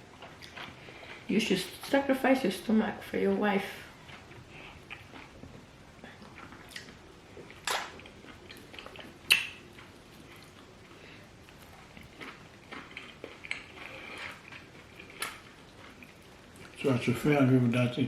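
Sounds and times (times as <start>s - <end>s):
person chewing: 0.0s - 1.3s, 3.9s - 17.1s.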